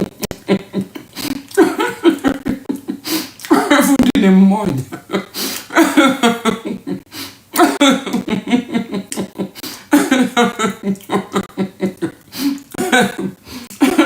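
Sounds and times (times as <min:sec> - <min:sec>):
person talking: 0:03.5 - 0:05.1.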